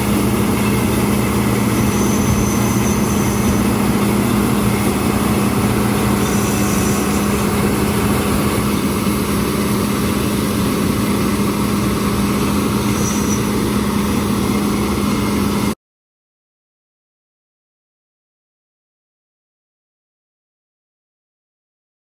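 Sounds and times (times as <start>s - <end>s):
combine harvester engine drone: 0.0s - 15.8s.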